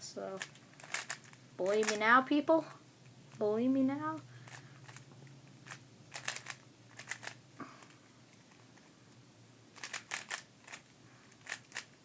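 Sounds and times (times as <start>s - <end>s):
plastic clicks of speed cube turning: 0.4s - 2.0s, 4.5s - 7.4s, 9.8s - 12.0s.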